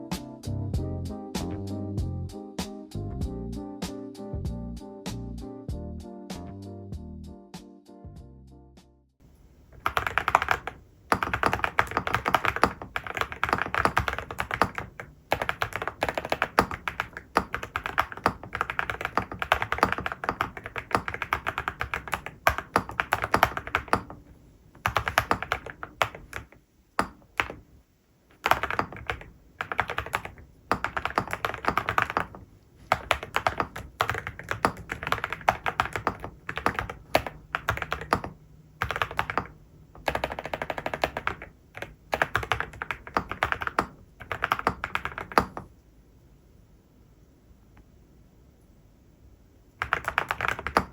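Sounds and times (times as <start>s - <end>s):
mechanical keyboard typing: 9.7s - 27.6s, 28.3s - 45.7s, 49.8s - 50.9s.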